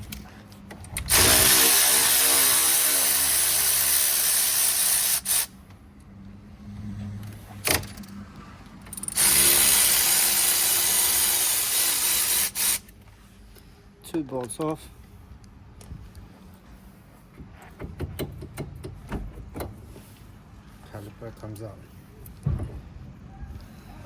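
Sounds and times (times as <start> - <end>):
power ratchet whining: 1.0 - 5.5, 8.9 - 12.9.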